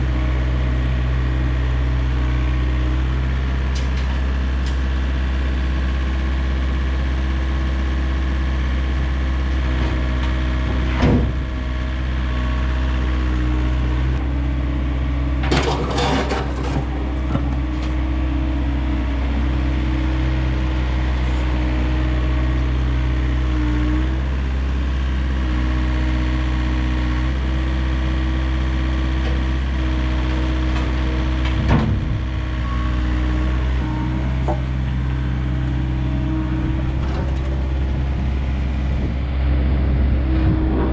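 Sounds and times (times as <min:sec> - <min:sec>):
diesel engine droning: 0:00.0 - 0:40.9
clatter of impacts: 0:15.4 - 0:17.9.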